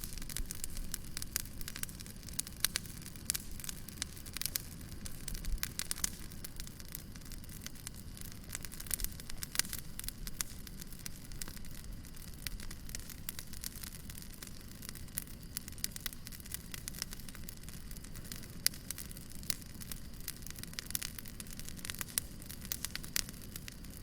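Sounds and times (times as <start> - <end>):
wood fire crackling: 0.0 - 24.0.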